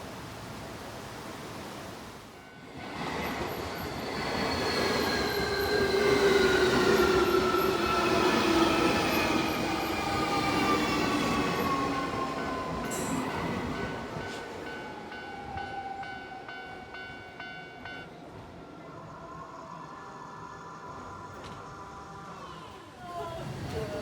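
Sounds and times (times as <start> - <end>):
electric train running: 2.6 - 17.6.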